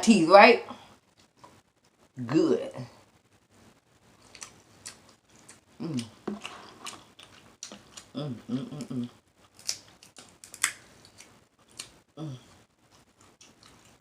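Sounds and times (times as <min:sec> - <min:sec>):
short hummed voice: 0:08.2 - 0:09.2.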